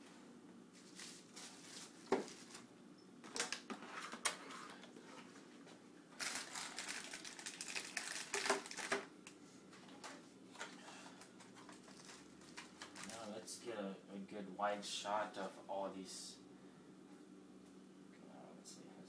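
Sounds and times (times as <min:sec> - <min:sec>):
packaging rustling: 0:06.2 - 0:09.1, 0:11.1 - 0:13.3.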